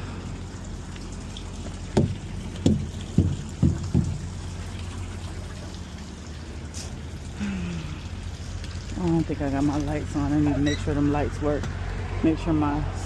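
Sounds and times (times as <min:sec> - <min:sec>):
sharp knocks: 0:02.0 - 0:04.3.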